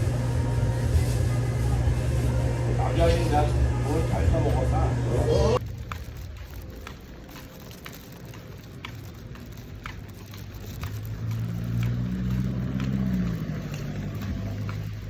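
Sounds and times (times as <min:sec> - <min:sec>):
vehicle rumble: 0:00.0 - 0:15.0.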